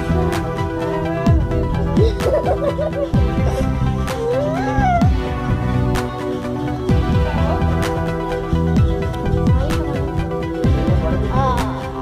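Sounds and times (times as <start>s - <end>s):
electronic beat music: 0.0s - 12.0s.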